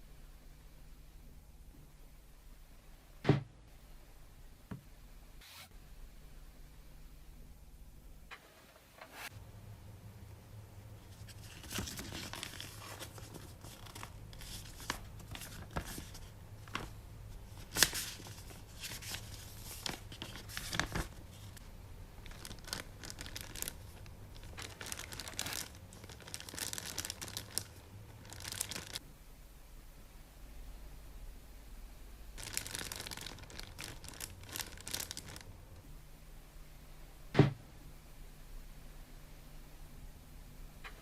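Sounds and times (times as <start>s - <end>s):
plastic and paper crinkling: 11.0s - 29.0s, 32.4s - 35.5s.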